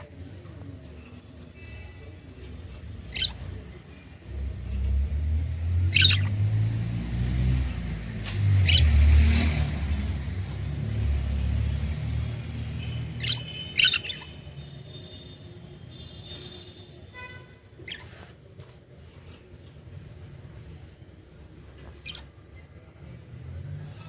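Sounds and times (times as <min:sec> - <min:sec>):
budgerigars chirping: 0:02.8 - 0:03.8, 0:05.9 - 0:06.4, 0:08.6 - 0:09.7, 0:12.2 - 0:14.5, 0:17.8 - 0:18.2, 0:21.8 - 0:22.4.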